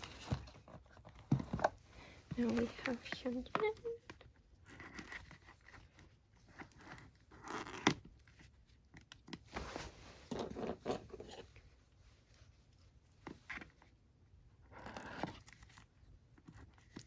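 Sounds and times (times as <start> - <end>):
paper and plastic rustling: 0.0 - 4.1.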